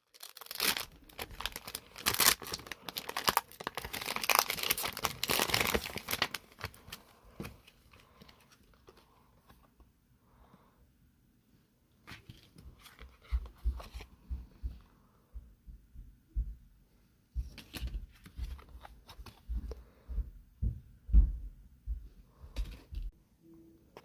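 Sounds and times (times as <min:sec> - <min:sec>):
wrapper crinkling and tearing: 0:00.0 - 0:07.0.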